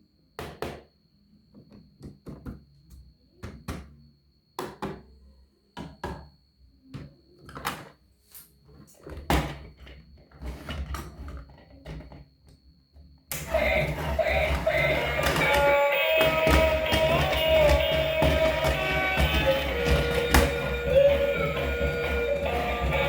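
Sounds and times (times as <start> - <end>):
objects knocking and thudding: 13.3 - 23.0.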